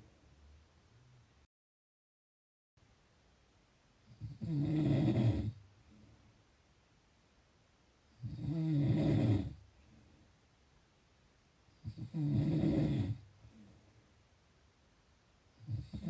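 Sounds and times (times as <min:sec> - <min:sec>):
person snoring: 0:04.2 - 0:05.6, 0:08.2 - 0:09.6, 0:11.8 - 0:13.2.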